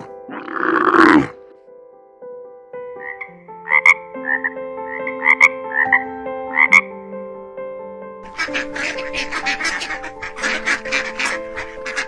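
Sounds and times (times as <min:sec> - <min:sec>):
frogs croaking: 0:00.0 - 0:01.5, 0:03.0 - 0:06.9.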